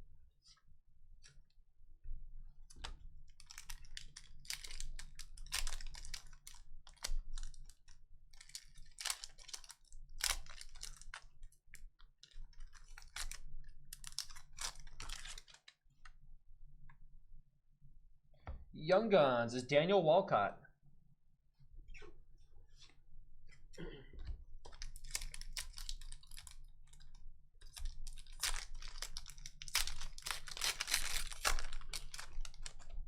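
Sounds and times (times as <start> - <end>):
trading cards clicking and rustling: 27.6 - 33.0.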